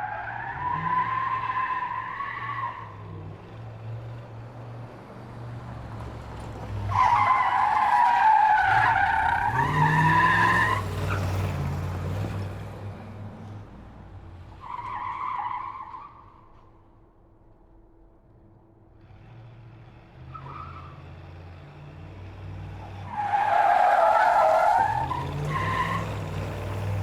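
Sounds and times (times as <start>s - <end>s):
car tyres screeching: 0.0s - 3.2s, 6.6s - 11.8s, 14.5s - 16.8s, 19.0s - 21.5s, 22.2s - 27.0s.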